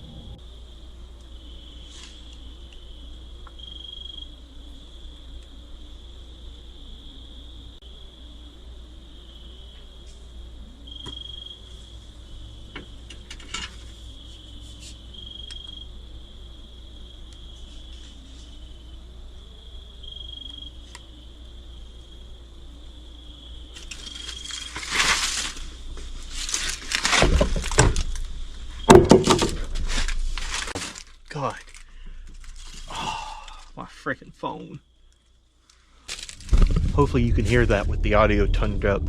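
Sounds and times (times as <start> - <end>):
crickets trilling: 0.0 - 39.0
loud rustling and crunching: 23.7 - 33.8, 35.7 - 38.5.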